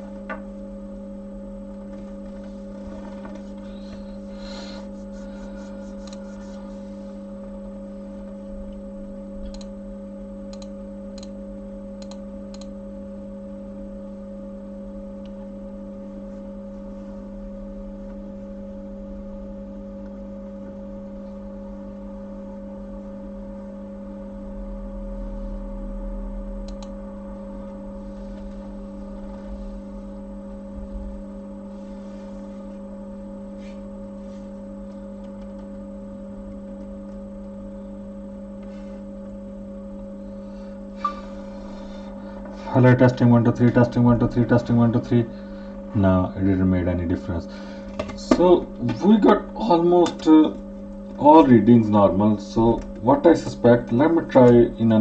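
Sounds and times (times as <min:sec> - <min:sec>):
electrical hum: 0:00.0 - 0:55.0
light clicks: 0:09.5 - 0:09.7, 0:10.5 - 0:11.4, 0:12.0 - 0:12.7.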